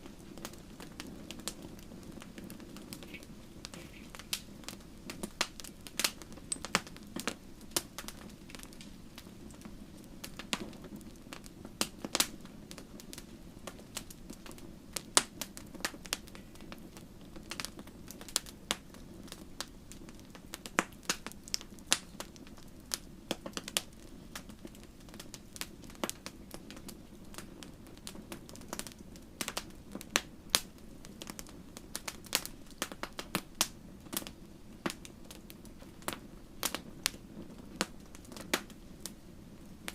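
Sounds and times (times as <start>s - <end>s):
wood bonfire crackling: 0.0s - 39.9s
sharp pops and snaps: 2.3s - 8.9s.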